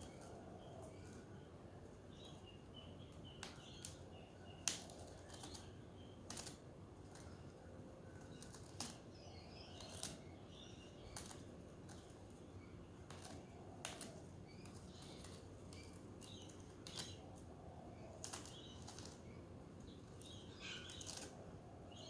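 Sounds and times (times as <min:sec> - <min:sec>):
budgerigars chirping: 0:20.2 - 0:21.3.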